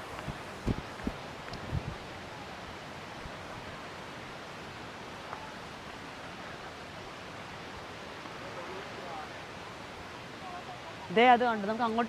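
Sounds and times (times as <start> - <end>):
low bumps: 0.0 - 2.1.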